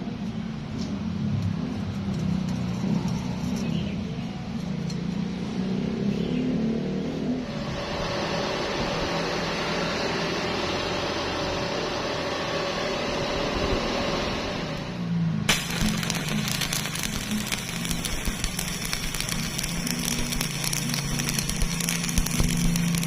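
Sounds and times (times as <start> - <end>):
angle grinder grinding steel: 15.5 - 23.0
welding arc crackling: 15.5 - 23.0.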